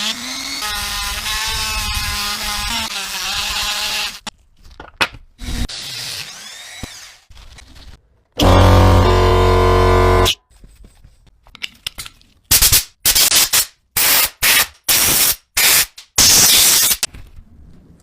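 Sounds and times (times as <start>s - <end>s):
loud noisy bursts: 8.4s - 10.3s
small power tool running: 8.4s - 10.3s.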